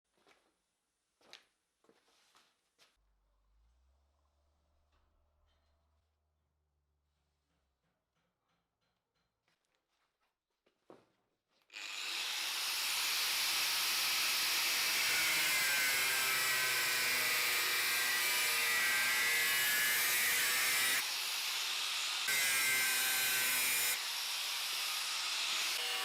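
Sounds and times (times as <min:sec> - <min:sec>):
power tool grinding sheet steel: 0:11.7 - 0:26.0.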